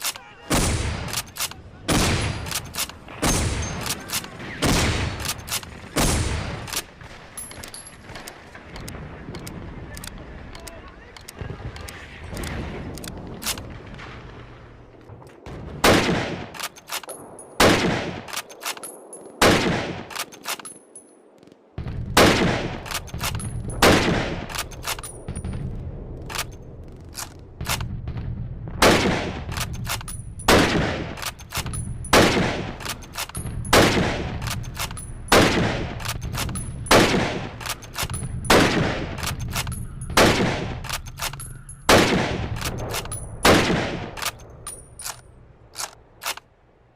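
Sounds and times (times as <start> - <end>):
rifle bolt clicks: 0.0 - 0.2, 1.0 - 1.6, 2.4 - 3.0, 3.6 - 4.3, 5.2 - 5.7, 16.5 - 17.3, 18.2 - 19.2, 20.1 - 21.1, 22.8 - 23.5, 24.5 - 25.4, 26.2 - 27.9, 29.5 - 30.5, 31.2 - 32.2, 32.8 - 38.6, 39.2 - 40.2, 40.8 - 41.8, 42.5 - 43.5, 44.1 - 46.5
rifle shots with ringing tail: 28.8 - 45.3.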